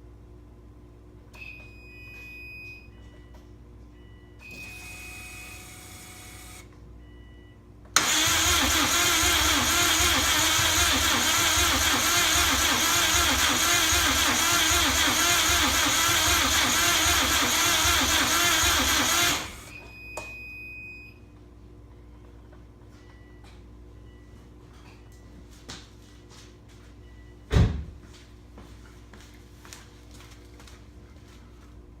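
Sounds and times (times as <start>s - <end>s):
engine cranking by starter: 8.0s - 19.7s.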